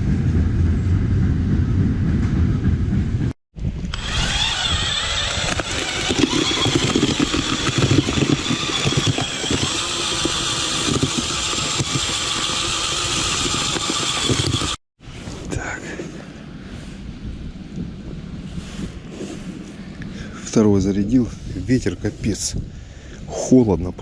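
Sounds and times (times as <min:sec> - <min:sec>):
low wind rumble: 0:00.0 - 0:24.0
engine running with whine: 0:03.9 - 0:14.8.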